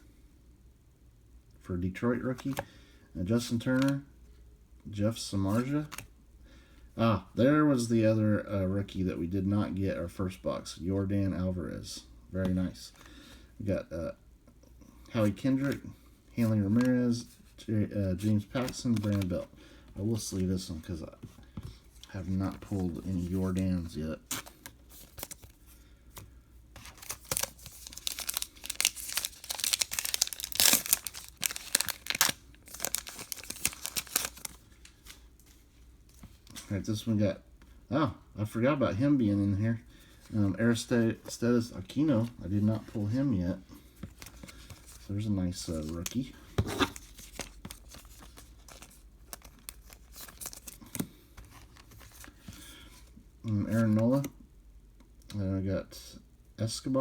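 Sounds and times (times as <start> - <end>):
plastic wrapper tearing and crinkling: 24.3 - 25.6, 26.8 - 35.2, 46.9 - 51.1.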